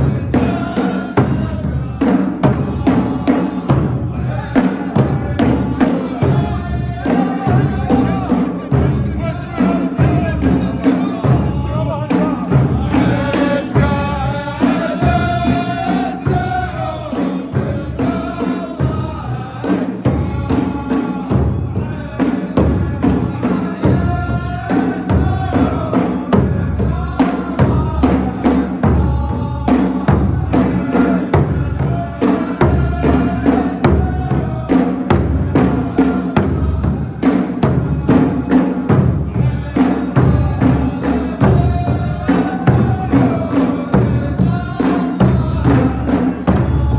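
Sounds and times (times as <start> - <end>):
rapid drumming: 0.0 - 46.9
voices singing a chant: 0.0 - 46.9.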